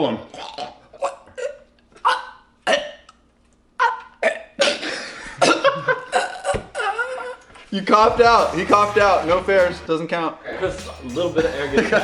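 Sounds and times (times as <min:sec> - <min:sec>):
man coughing: 0:04.6 - 0:07.1
man making choking noises: 0:06.1 - 0:07.4, 0:10.5 - 0:12.0.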